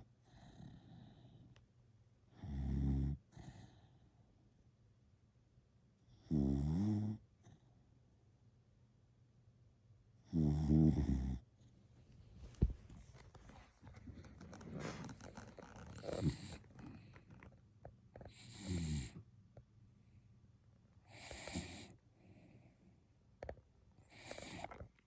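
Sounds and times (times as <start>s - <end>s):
person snoring: 14.5s - 17.4s, 18.2s - 19.2s, 21.1s - 22.0s, 24.1s - 24.8s.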